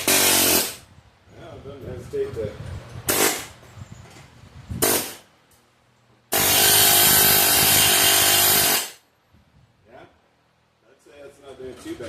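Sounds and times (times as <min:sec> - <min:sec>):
pneumatic air hammer hammering: 0:00.0 - 0:00.8, 0:03.1 - 0:03.6, 0:04.8 - 0:05.3, 0:06.3 - 0:09.0.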